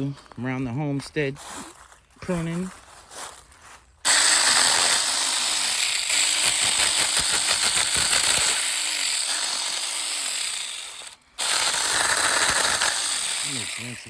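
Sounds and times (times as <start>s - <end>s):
chainsaw cutting a branch: 4.0s - 14.0s.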